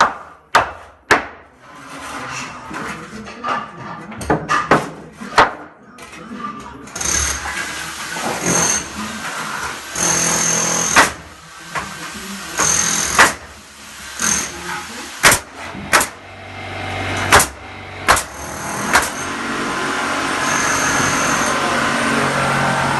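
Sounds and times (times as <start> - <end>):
sharp knocks: 15.2 - 16.2, 17.2 - 19.2.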